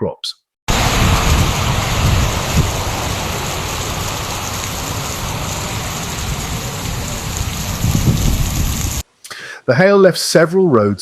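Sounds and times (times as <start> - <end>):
heavy rain and hail: 0.7 - 9.0.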